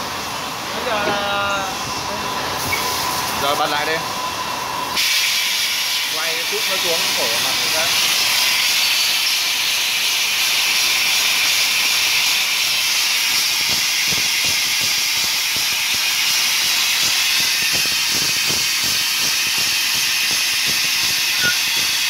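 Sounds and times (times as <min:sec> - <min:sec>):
compressed air hiss: 0:05.0 - 0:22.0.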